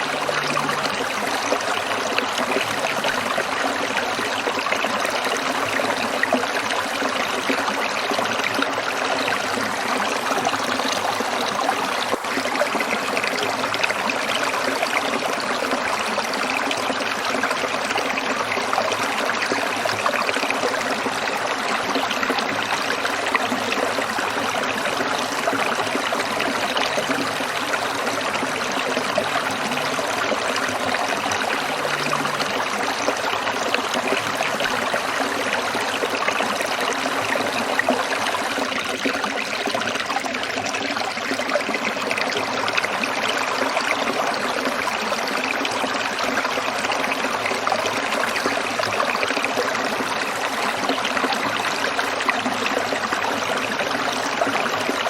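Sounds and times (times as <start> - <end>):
stream water over rocks: 0.0 - 55.0.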